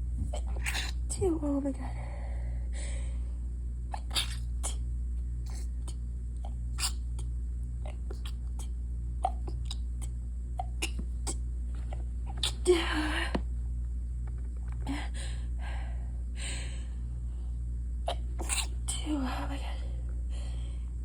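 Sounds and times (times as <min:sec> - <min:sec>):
steady low hum: 0:00.0 - 0:21.0
stifled sneeze: 0:03.9 - 0:04.8, 0:06.8 - 0:07.2, 0:12.3 - 0:12.8, 0:18.1 - 0:18.9.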